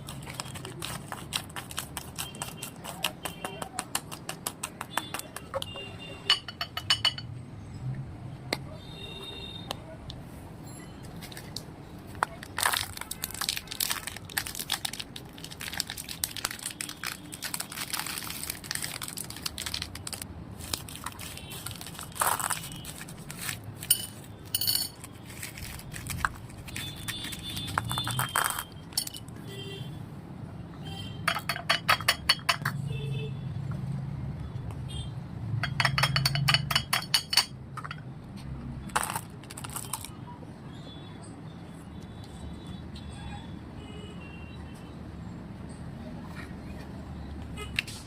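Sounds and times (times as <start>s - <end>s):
plastic packaging crinkling: 0.0s - 3.4s, 11.2s - 29.2s, 38.9s - 40.2s
hard candies clinking: 0.0s - 7.2s, 11.2s - 29.4s, 31.3s - 32.8s, 35.6s - 38.0s, 38.9s - 40.2s.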